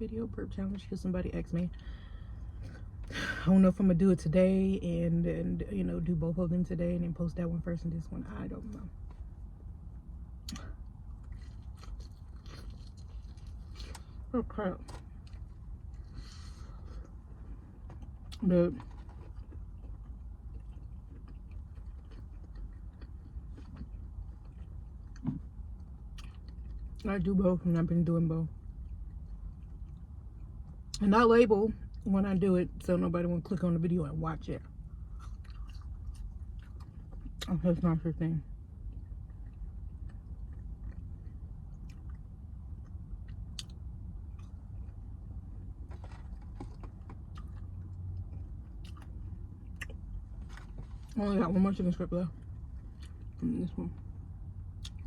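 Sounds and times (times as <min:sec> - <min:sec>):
steady low hum: 0:00.0 - 0:55.0
steady low rumble: 0:00.0 - 0:55.0
person chewing: 0:10.4 - 0:14.3, 0:14.9 - 0:27.0, 0:35.1 - 0:37.4, 0:38.9 - 0:51.2, 0:52.5 - 0:53.4, 0:54.8 - 0:55.0.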